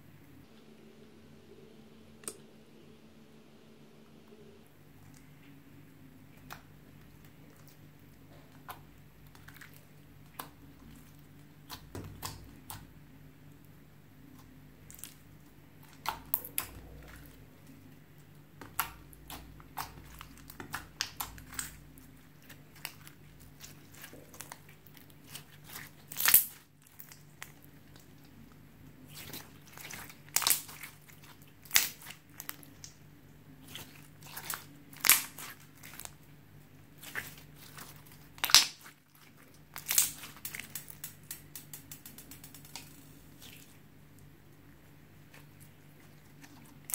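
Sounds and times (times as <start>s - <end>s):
slime squished by hand: 18.5s - 28.4s, 29.0s - 33.0s, 33.6s - 43.9s.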